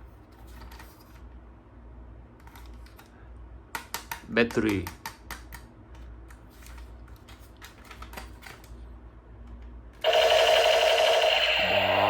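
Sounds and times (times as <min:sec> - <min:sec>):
plastic toy gun rattling: 0:06.6 - 0:08.8
loud electronic tone: 0:10.0 - 0:12.0.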